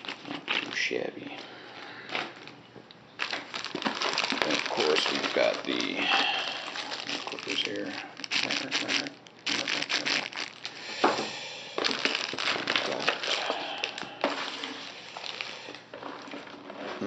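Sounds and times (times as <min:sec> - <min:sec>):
packaging crinkling: 0:00.0 - 0:02.6, 0:03.2 - 0:17.0.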